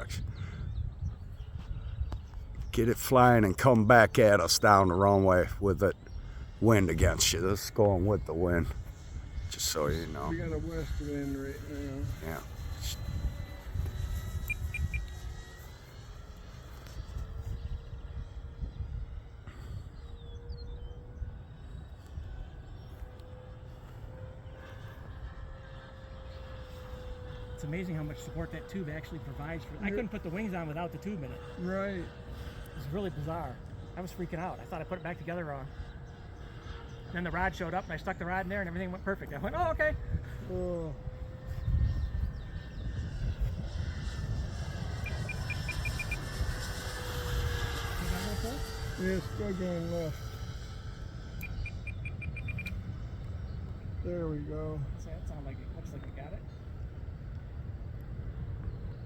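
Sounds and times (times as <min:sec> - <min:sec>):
electric motor and propeller whine: 0:00.0 - 0:59.0
wind rumbling on microphone: 0:00.0 - 0:59.0
bird chirping: 0:40.9 - 0:46.9, 0:50.2 - 0:54.1.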